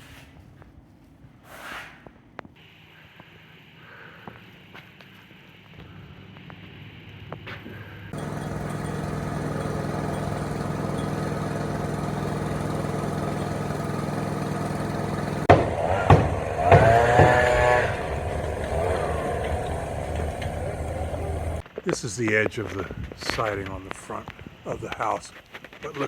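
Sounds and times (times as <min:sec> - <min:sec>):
engine running: 0:08.1 - 0:21.6
sharp knocks: 0:08.2 - 0:21.6.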